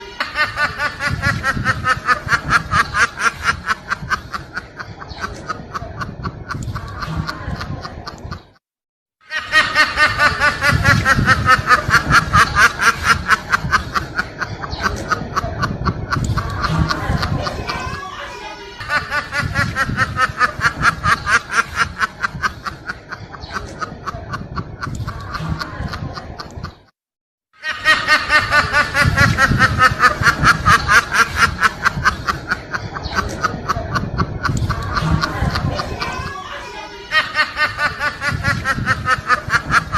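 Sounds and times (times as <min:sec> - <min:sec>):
cackling duck laugh: 0:00.0 - 0:08.6, 0:09.3 - 0:26.8, 0:27.6 - 0:39.9
duck-like snickering laugh: 0:00.0 - 0:08.6, 0:18.8 - 0:26.8.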